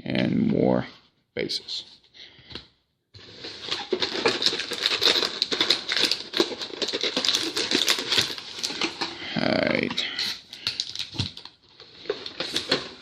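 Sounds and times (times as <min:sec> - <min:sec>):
foil wrappers crinkling: 0:03.2 - 0:13.0.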